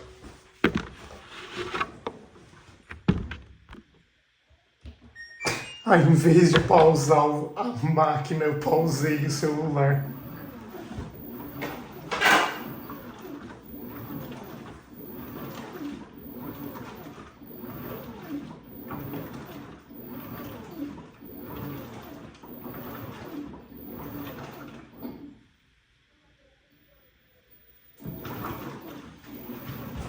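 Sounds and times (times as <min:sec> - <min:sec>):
washing machine agitating: 0:05.2 - 0:25.5, 0:27.6 - 0:30.0.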